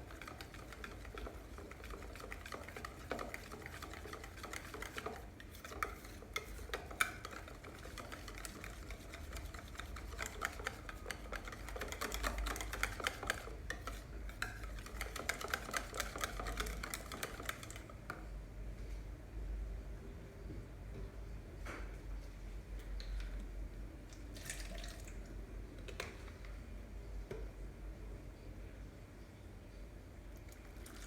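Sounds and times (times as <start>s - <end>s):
utensil beating batter in bowl: 0.0s - 18.2s.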